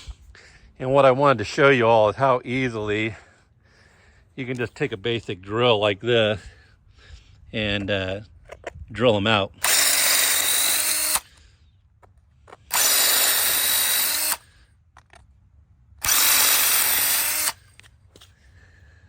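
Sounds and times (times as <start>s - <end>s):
power drill drilling metal: 9.6s - 11.4s, 12.6s - 14.6s, 16.0s - 17.9s.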